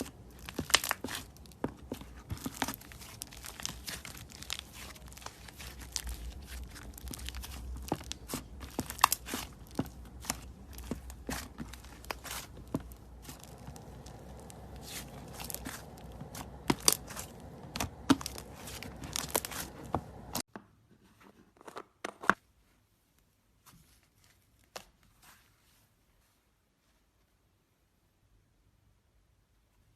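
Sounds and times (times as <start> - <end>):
slime squeezed crackling and popping: 0.0 - 20.4.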